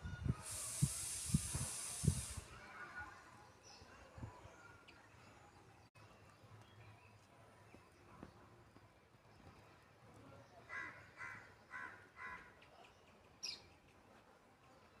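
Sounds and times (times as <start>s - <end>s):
crow cawing: 10.7s - 12.6s.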